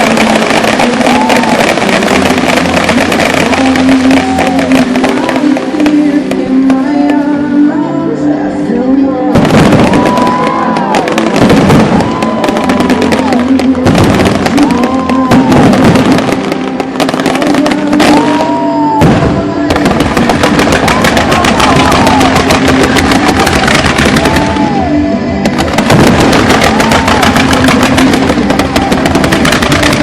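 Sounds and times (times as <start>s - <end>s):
fireworks crackling: 0.0s - 7.7s, 9.3s - 30.0s
show music: 0.0s - 30.0s.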